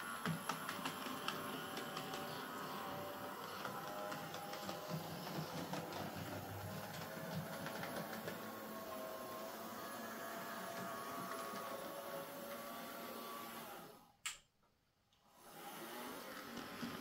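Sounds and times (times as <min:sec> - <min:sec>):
model locomotive motor whirring: 0:00.0 - 0:14.0.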